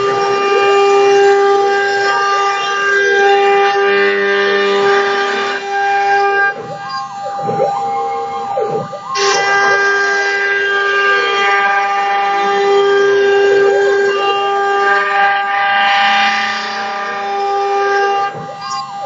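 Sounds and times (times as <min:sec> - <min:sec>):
router cutting plywood whine: 0:00.0 - 0:19.0
stepper motors pitch rising and falling: 0:00.0 - 0:19.0.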